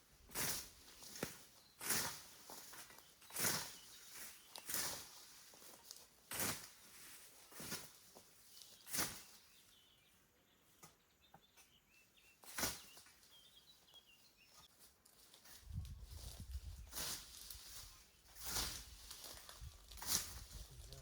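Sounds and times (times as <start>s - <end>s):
scythe swishing through grass: 0.3s - 8.1s, 8.8s - 9.4s, 12.4s - 13.0s, 16.2s - 20.6s
faint bird chirps: 8.4s - 14.7s.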